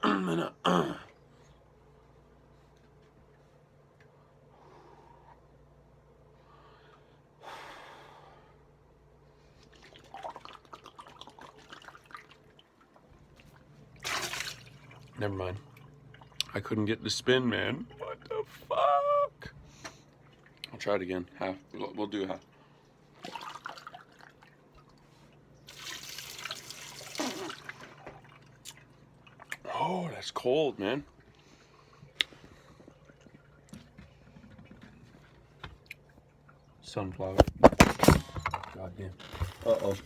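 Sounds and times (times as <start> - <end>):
water sloshing in a bottle: 9.5 - 16.6, 21.6 - 29.9
water splashing: 9.7 - 16.4, 25.7 - 29.6
water gushing from bottle: 14.0 - 15.0, 25.7 - 28.6.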